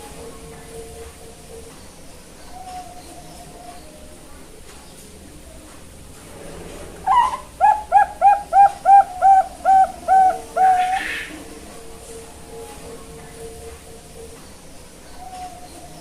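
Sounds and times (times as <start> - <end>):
dove cooing: 7.0 - 11.6.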